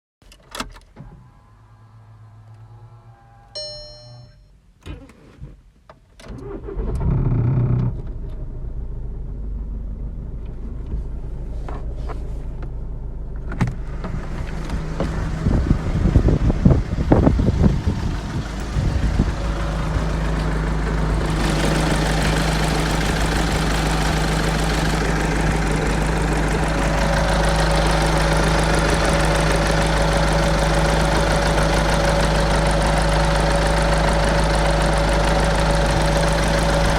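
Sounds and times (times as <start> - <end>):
diesel engine idling: 8.4 - 36.9.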